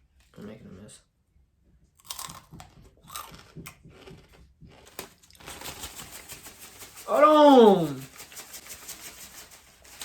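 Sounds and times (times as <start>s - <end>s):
chips crunching: 2.0s - 5.6s
chip bag crinkling: 4.9s - 10.0s.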